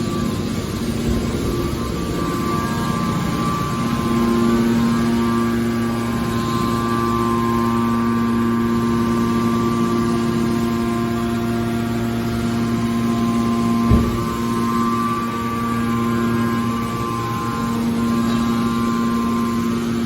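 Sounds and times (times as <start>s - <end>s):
hydraulic power unit humming: 0.0s - 20.0s
short thump: 13.9s - 14.5s.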